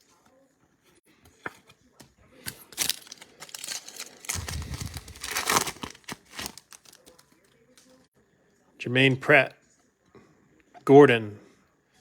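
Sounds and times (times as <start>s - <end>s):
foil wrapper crackling and rustling: 2.5s - 8.1s.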